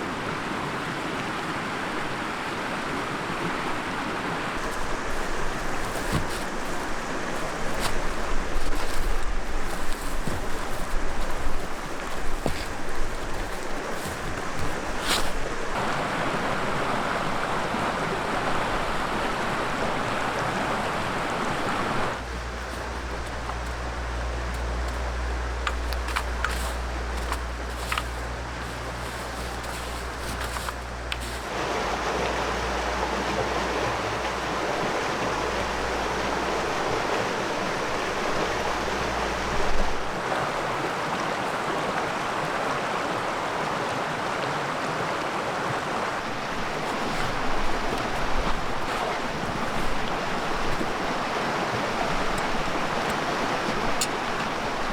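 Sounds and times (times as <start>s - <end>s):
river water flowing: 0.0s - 54.9s
steady low hum: 21.1s - 39.7s.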